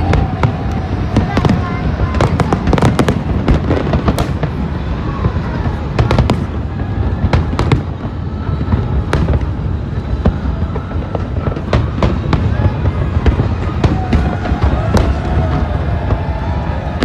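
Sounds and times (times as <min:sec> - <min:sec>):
fireworks cracks and bangs: 0:00.0 - 0:17.0
fireworks rumble: 0:00.0 - 0:17.0.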